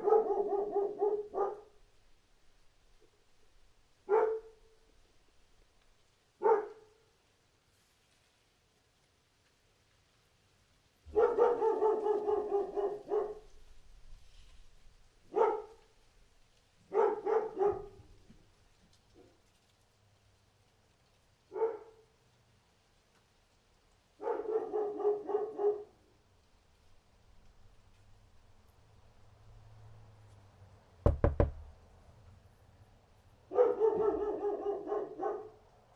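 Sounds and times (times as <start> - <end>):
dog barking: 0.0 - 1.8, 4.0 - 4.7, 6.4 - 7.1, 11.1 - 13.6, 15.3 - 15.9, 16.8 - 18.2, 21.5 - 22.2, 24.2 - 26.0, 33.5 - 35.6
sharp knocks: 31.1 - 31.7.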